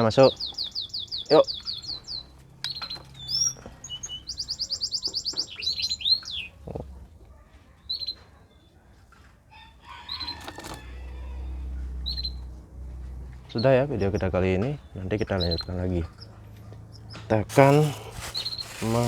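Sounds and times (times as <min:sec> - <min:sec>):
songbirds chirping and whistling: 0:00.0 - 0:06.7, 0:07.8 - 0:08.8, 0:09.5 - 0:19.0
wings fluttering: 0:17.5 - 0:19.0.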